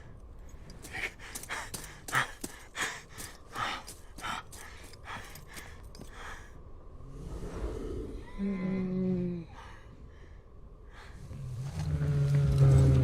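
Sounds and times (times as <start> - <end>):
man panting heavily: 0.8 - 6.6
low rumble: 6.2 - 13.0.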